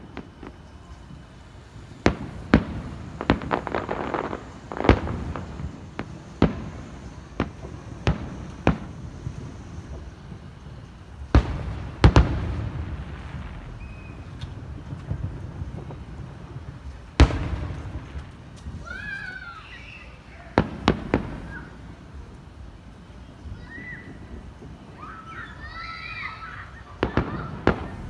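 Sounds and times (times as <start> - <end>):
fireworks bangs: 0.0 - 28.0
fireworks crackling: 0.0 - 28.0.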